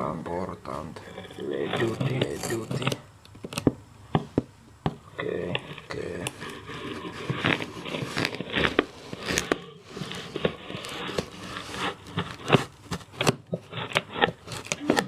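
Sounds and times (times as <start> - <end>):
packing tape tearing: 5.8 - 15.0
cardboard box tearing open: 6.0 - 15.0.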